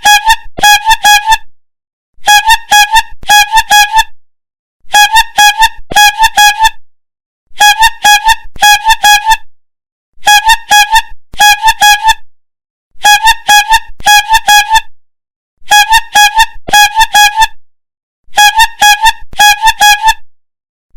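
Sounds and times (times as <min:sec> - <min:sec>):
street seller's horn tooting: 0:00.0 - 0:01.4, 0:02.2 - 0:04.1, 0:04.9 - 0:06.8, 0:07.6 - 0:09.4, 0:10.2 - 0:12.2, 0:13.0 - 0:14.8, 0:15.7 - 0:17.6, 0:18.3 - 0:20.2.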